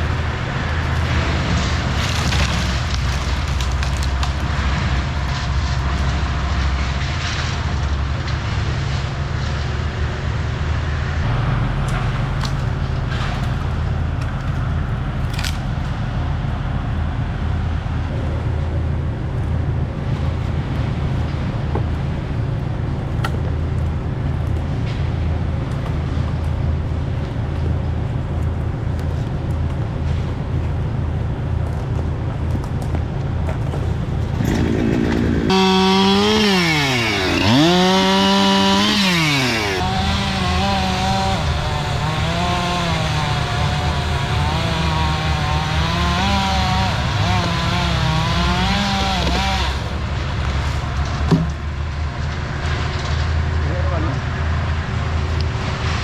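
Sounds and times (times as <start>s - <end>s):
sharp cracks and snaps: 0.7s - 6.2s, 11.9s - 16.0s
motor engine running loudly: 33.5s - 50.0s.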